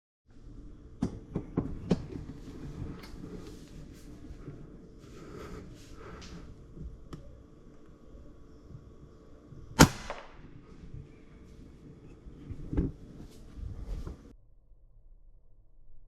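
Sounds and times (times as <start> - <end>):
air rifle shot: 9.8 - 10.6.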